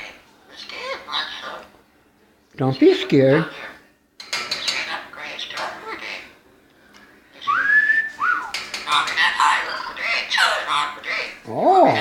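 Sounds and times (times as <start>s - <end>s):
parrot chattering and squawking: 0.5s - 1.7s, 8.5s - 12.0s
parrot whistling: 7.4s - 8.6s.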